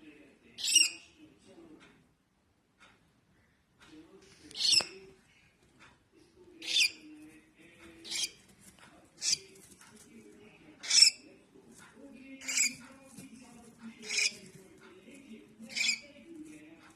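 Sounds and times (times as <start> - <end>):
cockatiel harsh calls: 0.6 - 1.0, 6.6 - 7.0, 8.1 - 8.4, 9.2 - 9.5, 10.8 - 11.2, 12.4 - 12.8, 14.0 - 14.4, 15.7 - 16.0.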